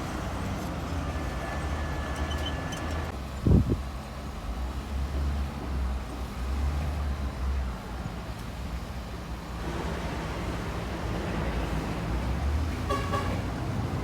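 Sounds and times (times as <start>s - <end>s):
bulldozer diesel engine running: 7.8s - 13.0s.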